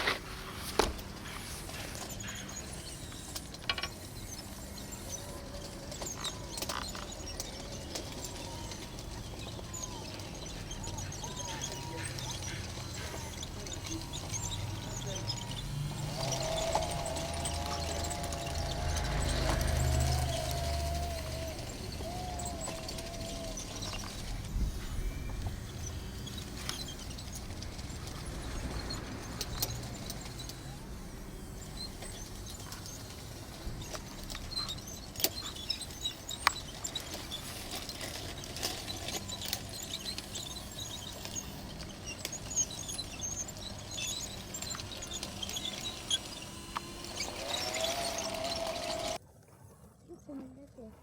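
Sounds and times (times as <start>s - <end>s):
wavering motor whine: 0.0s - 49.2s
tracks clicking and scraping soil: 0.0s - 51.0s.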